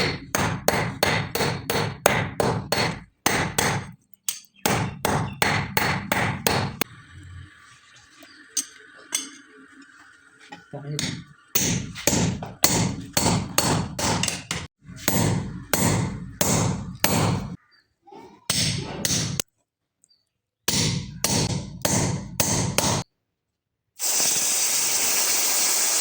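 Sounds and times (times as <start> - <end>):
hammer striking steel: 0.0 - 6.8, 11.0 - 17.6, 20.7 - 23.0.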